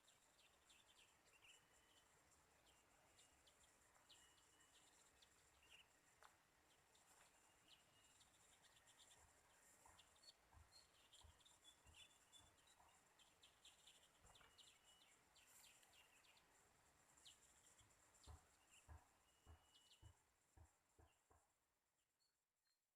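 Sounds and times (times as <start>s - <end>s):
steady high hiss: 0.0s - 10.5s
small bird chirping: 0.0s - 21.4s.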